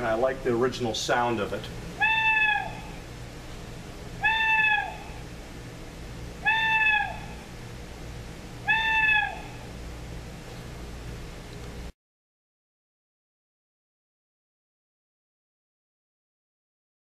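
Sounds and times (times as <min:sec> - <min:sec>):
recorded owl call alarm: 0:02.0 - 0:03.1, 0:04.2 - 0:05.3, 0:06.4 - 0:07.6, 0:08.6 - 0:09.8.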